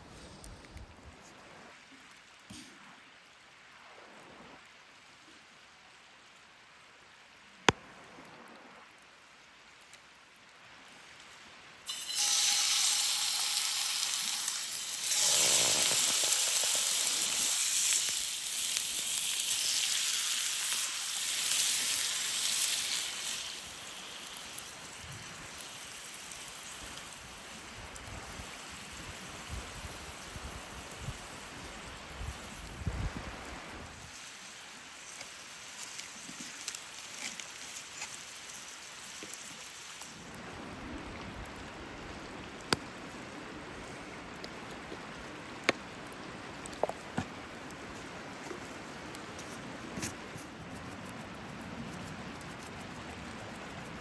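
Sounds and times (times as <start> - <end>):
food sizzling in a pan: 11.9 - 33.1, 33.9 - 40.2.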